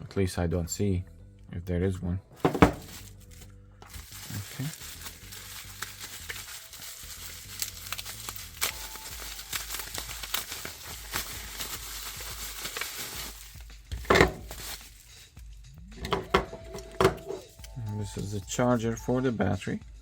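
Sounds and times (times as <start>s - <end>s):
object knocking when set down: 2.4s - 3.0s, 14.0s - 14.6s, 16.0s - 17.4s
plastic packaging crinkling: 2.4s - 15.2s.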